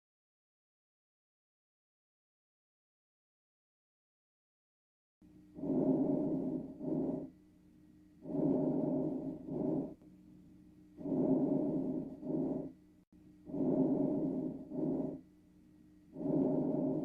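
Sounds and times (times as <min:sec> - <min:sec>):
faint steady hum: 0:05.2 - 0:17.0
lung breath sounds: 0:05.6 - 0:07.3, 0:08.2 - 0:10.0, 0:11.0 - 0:12.8, 0:13.5 - 0:15.2, 0:16.1 - 0:17.0.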